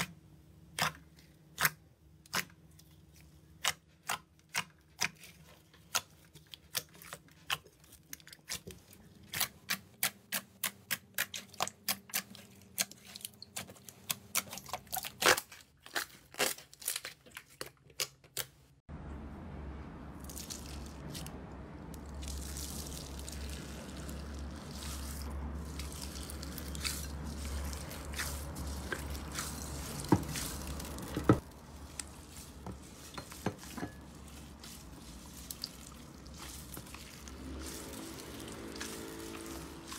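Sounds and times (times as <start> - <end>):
slime squishing and crackling: 0.0 - 18.6, 22.0 - 39.9
low hum: 18.9 - 39.9.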